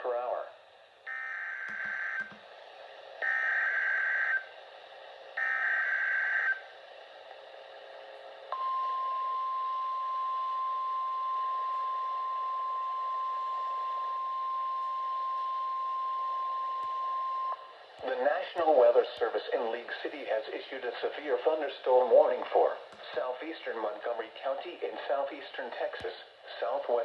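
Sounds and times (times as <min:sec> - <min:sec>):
radio hiss: 0:00.0 - 0:00.6, 0:17.5 - 0:27.0
steady warning alarm tone: 0:01.1 - 0:02.4, 0:03.2 - 0:04.5, 0:05.4 - 0:06.6, 0:08.5 - 0:17.8.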